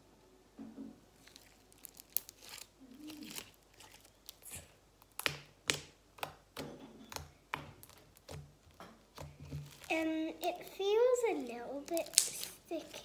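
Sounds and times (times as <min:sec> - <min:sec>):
slime sticky clicks and pops: 0:11.9 - 0:12.5.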